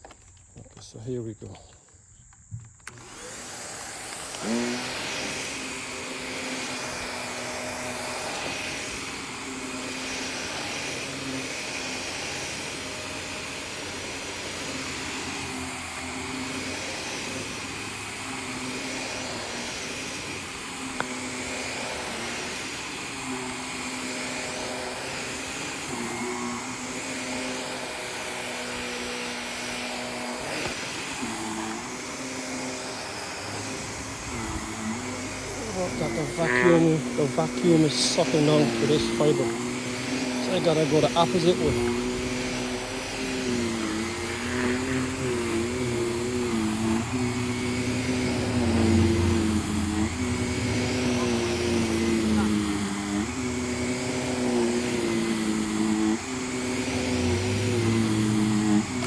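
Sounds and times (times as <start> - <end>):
vacuum cleaner running: 2.5 - 59.0.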